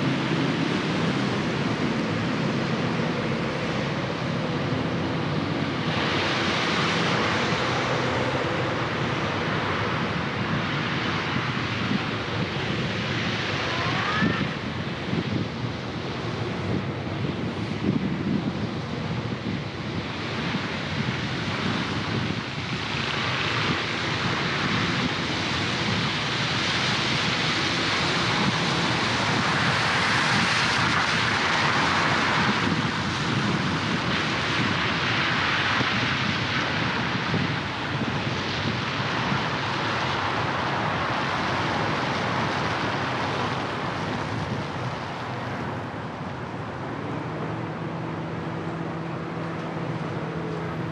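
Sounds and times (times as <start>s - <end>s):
low traffic rumble: 0.0s - 50.9s
tyre hiss on wet road: 20.0s - 45.8s.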